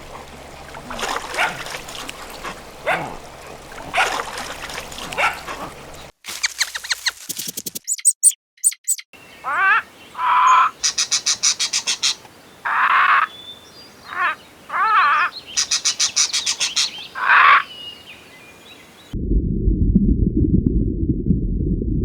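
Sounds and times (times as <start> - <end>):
birds calling: 0.0 - 7.2, 7.9 - 19.1
rapid rattling bird trills: 14.1 - 17.6.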